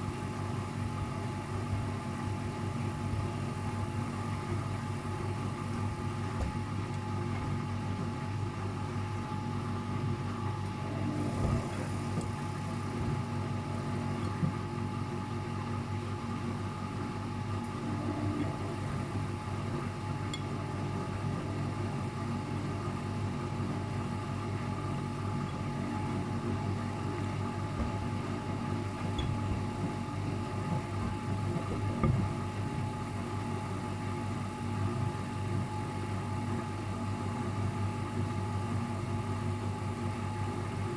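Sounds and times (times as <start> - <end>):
washing machine spinning: 0.0 - 40.9
washing machine drum thumps: 28.9 - 33.0.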